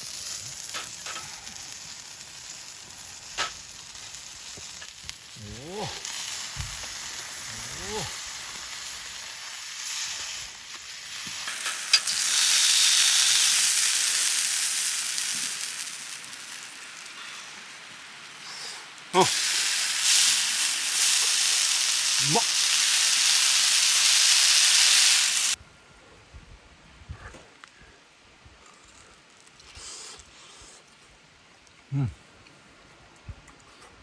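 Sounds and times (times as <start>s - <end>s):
food sizzling on a griddle: 0.0s - 25.6s.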